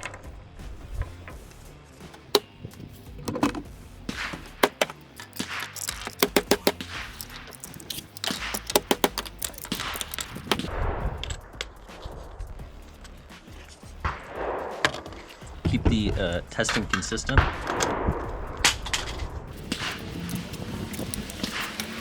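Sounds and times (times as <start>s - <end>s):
magazines clicking and knocking: 2.1s - 10.7s, 19.5s - 22.0s.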